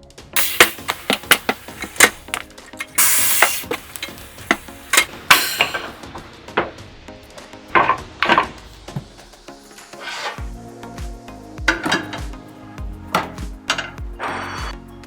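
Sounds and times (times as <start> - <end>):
air hiss: 0.4 - 12.4, 13.1 - 14.8
metal clanks and knocks: 11.7 - 12.4, 13.2 - 14.8.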